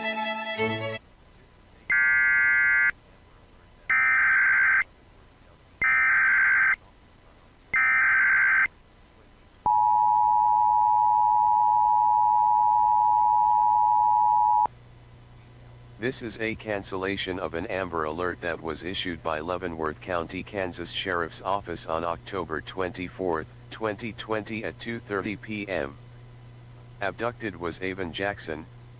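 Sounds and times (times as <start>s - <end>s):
two-tone attention signal: 9.7s - 14.7s.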